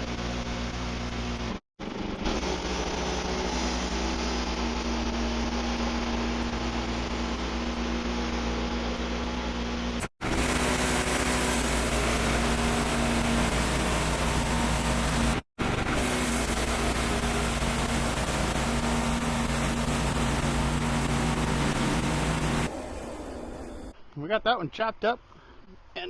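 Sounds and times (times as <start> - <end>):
sawmill engine humming: 0.0 - 24.0
band blade sawing log: 1.8 - 9.2, 9.9 - 23.1.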